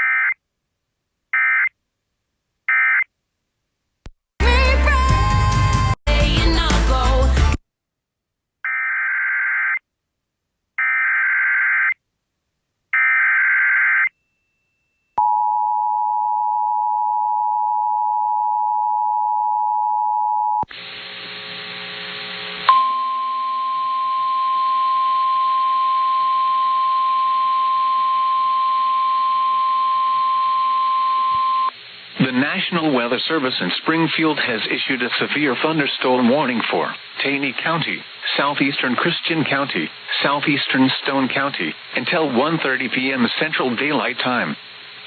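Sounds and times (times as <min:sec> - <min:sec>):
buzzy static: 0:20.7 - 0:22.7, 0:31.8 - 0:45.0.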